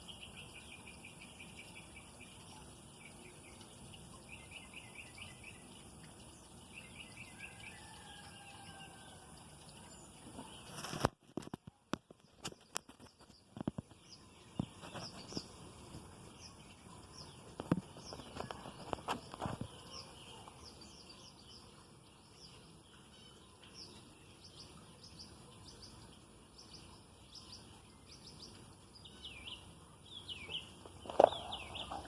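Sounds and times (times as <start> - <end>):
bird chirps: 26.8 - 32.0.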